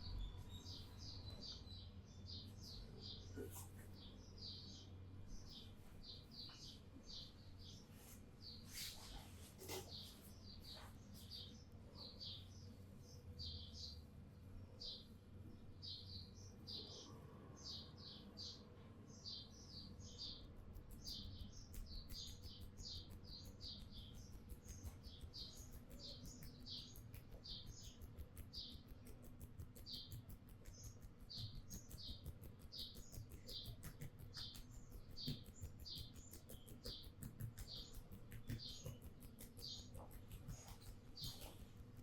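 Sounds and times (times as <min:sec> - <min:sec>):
small bird chirping: 0:00.0 - 0:42.0
hands rubbing hair: 0:07.9 - 0:11.2.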